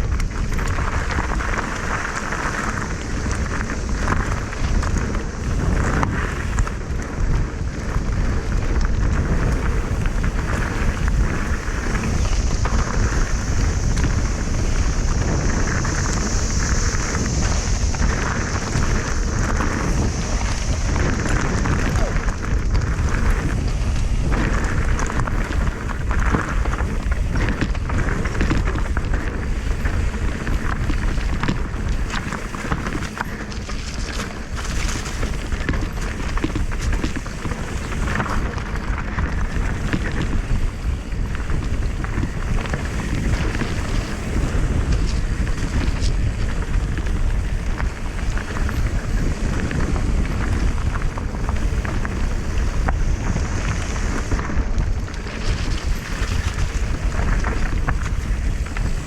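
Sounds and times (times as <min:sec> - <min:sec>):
wind buffeting microphone: 0:00.0 - 0:59.0
high hiss: 0:09.3 - 0:23.6.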